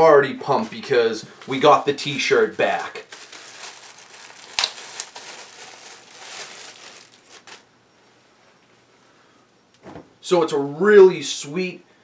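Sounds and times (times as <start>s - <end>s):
packaging crinkling and rustling: 0.5s - 7.7s.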